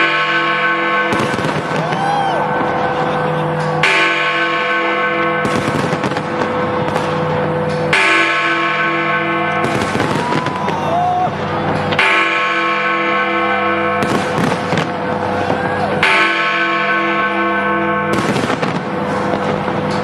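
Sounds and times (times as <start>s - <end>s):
tower bell ringing: 0.0s - 20.0s
fireworks bangs: 1.0s - 8.5s, 9.5s - 12.6s, 14.0s - 16.6s, 18.1s - 20.0s.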